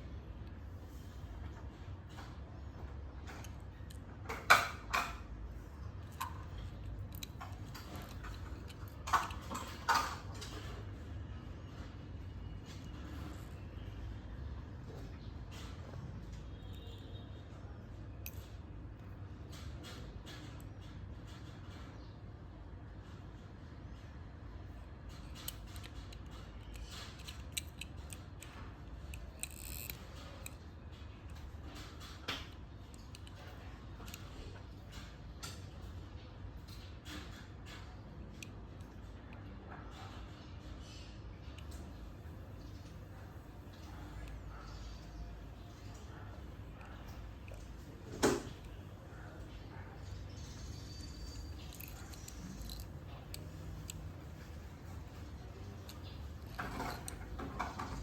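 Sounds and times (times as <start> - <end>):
toy vehicles clicking and clacking: 6.1 - 10.8, 25.1 - 35.6, 50.4 - 58.0.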